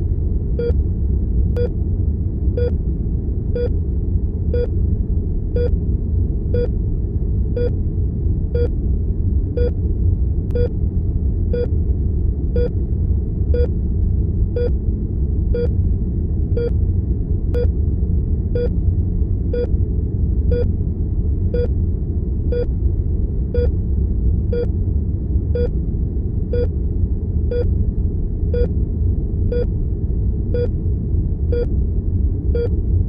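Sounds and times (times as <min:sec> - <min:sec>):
low hum of room tone: 0:00.0 - 0:33.0
heart monitor beeping: 0:10.5 - 0:10.7, 0:14.6 - 0:14.8.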